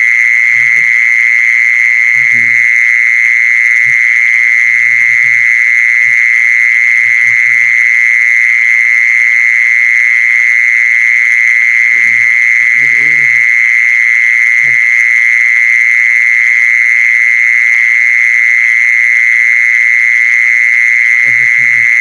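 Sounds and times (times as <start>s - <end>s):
high-pitched buzzing animal trill: 0.0s - 19.1s, 19.9s - 22.0s
faint low murmurs: 0.6s - 0.9s, 2.2s - 2.6s, 12.0s - 13.4s, 21.3s - 21.9s.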